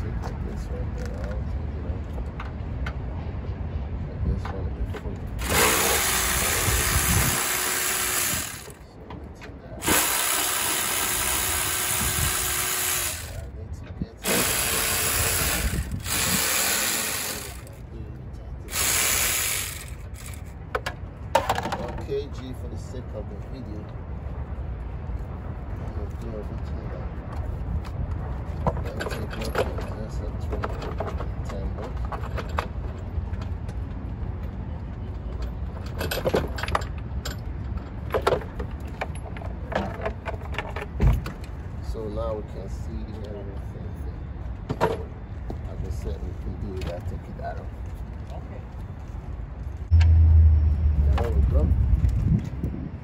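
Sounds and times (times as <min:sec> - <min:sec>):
cordless power tool running: 0:05.4 - 0:08.8, 0:09.8 - 0:13.4, 0:14.2 - 0:17.8, 0:18.7 - 0:20.4
steady low rumble: 0:48.2 - 0:53.0.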